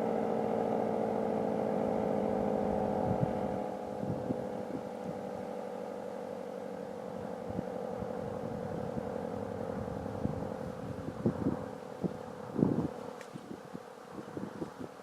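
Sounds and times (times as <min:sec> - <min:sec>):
wind rumbling on microphone: 0:01.6 - 0:15.0.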